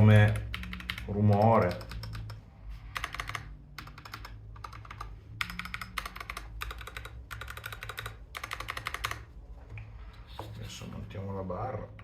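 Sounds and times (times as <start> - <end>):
mechanical keyboard typing: 0.0 - 9.3.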